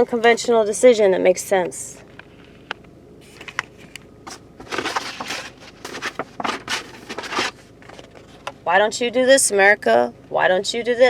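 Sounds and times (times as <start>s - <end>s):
rustling and crinkling: 3.2s - 8.6s.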